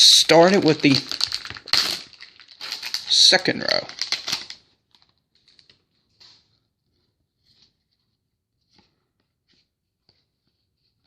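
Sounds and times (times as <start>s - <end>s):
trading cards and foil rustling: 0.0s - 6.6s.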